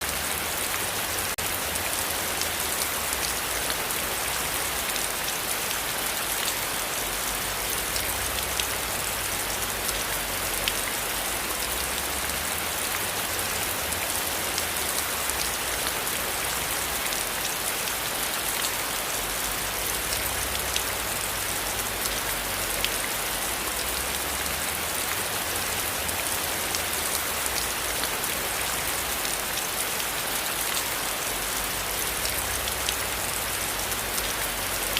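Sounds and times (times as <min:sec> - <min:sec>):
steady rain hiss: 0:00.0 - 0:34.9.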